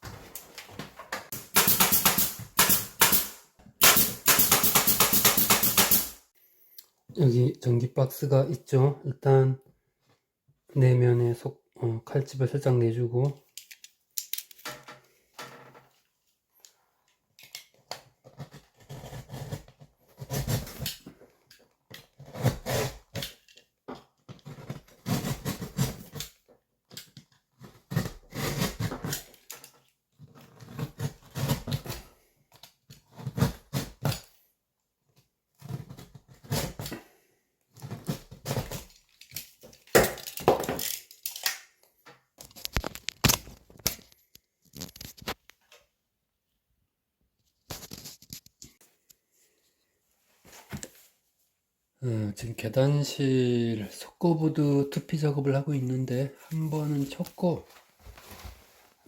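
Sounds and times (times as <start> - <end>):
utility knife cutting drywall: 24.4 - 26.3, 27.6 - 29.3.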